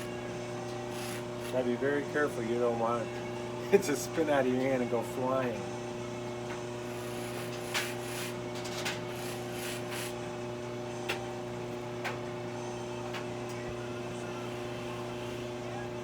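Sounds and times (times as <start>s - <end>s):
buffing motor hum: 0.0s - 3.6s, 6.0s - 11.3s, 12.6s - 16.0s.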